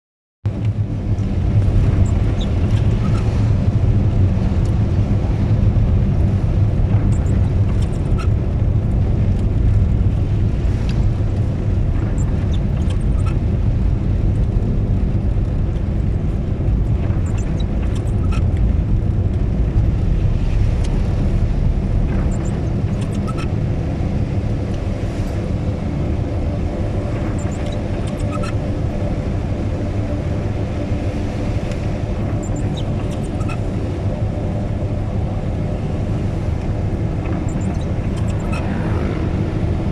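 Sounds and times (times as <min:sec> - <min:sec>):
vehicle rumbling: 0:00.4 - 0:39.9.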